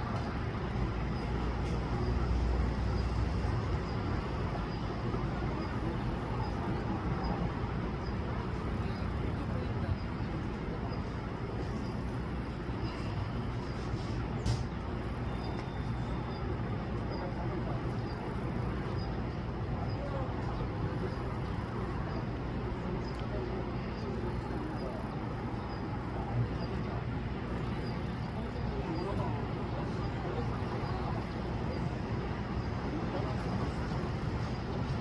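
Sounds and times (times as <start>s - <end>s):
insect calling high-pitched: 11.6s - 12.7s, 27.5s - 28.6s.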